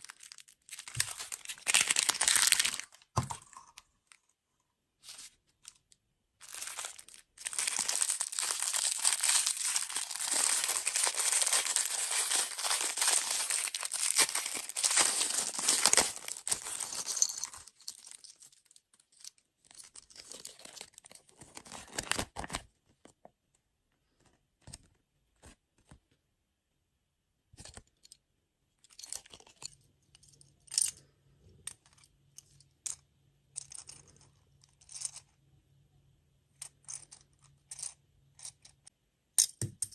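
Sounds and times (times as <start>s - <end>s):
food packaging tearing and crinkling: 0.0s - 3.1s, 6.4s - 18.2s.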